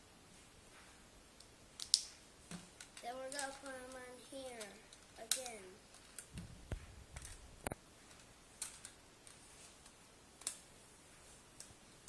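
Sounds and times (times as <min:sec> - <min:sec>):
plastic parts clicking: 0:02.8 - 0:06.4, 0:07.1 - 0:10.7.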